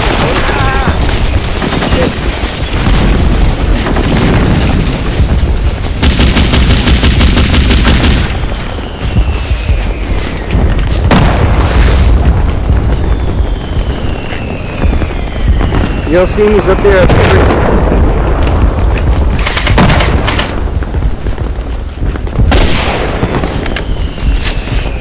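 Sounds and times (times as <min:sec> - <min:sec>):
wind buffeting microphone: 0:00.0 - 0:25.0
airsoft gun rapid shots: 0:06.0 - 0:08.3.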